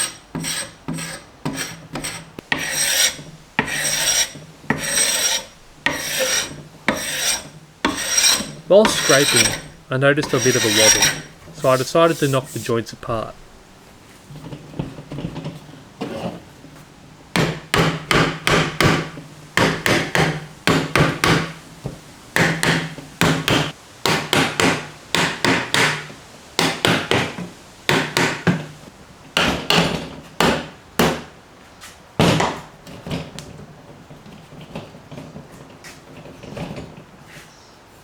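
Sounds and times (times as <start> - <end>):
hammer knocking on wood: 17.3 - 28.7.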